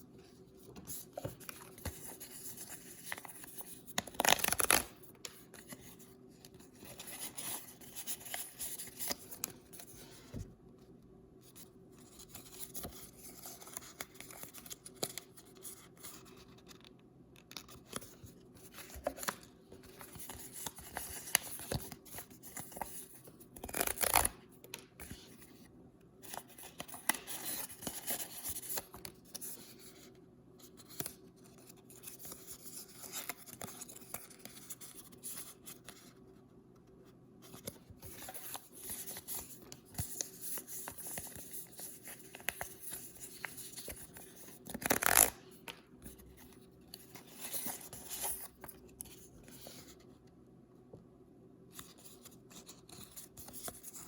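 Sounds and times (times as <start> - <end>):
paper crinkling and tearing: 3.1 - 4.9, 40.2 - 45.3.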